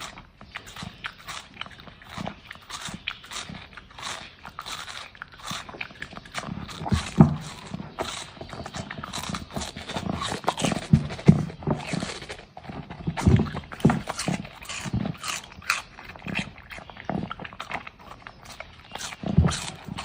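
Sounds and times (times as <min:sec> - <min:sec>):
dog crunching and chewing: 0:00.0 - 0:20.0.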